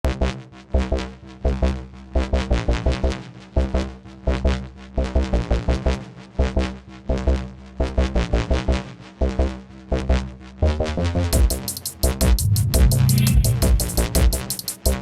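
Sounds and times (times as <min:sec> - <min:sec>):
heavy sub-bass hits: 0:11.4 - 0:14.6
drum machine breakbeat: 0:11.4 - 0:15.0
synthesizer lines: 0:11.6 - 0:14.8.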